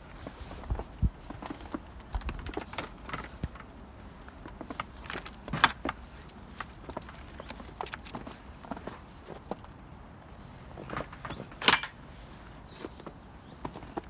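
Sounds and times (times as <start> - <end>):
metallic rattle: 5.6 - 5.8, 11.6 - 12.0.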